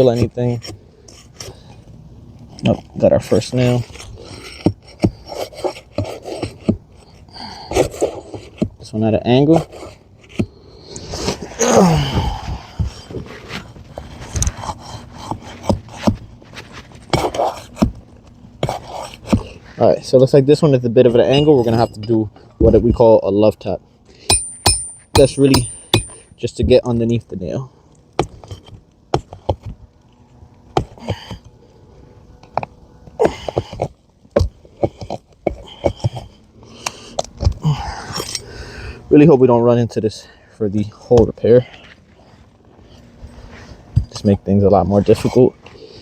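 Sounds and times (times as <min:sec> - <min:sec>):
tool scraping: 0:00.0 - 0:01.9, 0:02.7 - 0:08.8, 0:09.5 - 0:11.6, 0:12.4 - 0:19.9, 0:21.0 - 0:23.1, 0:24.2 - 0:26.3
metal tool tapping: 0:24.3 - 0:26.3.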